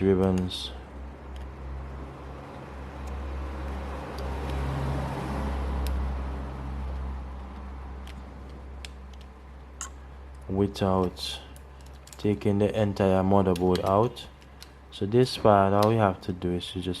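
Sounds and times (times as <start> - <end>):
passing vehicle rumble: 0.8 - 10.7.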